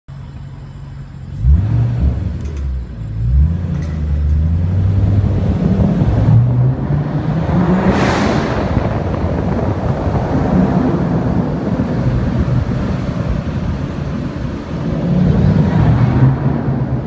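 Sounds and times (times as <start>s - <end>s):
car engine idling and revving: 0.1s - 17.0s
rush of noise: 4.9s - 17.0s.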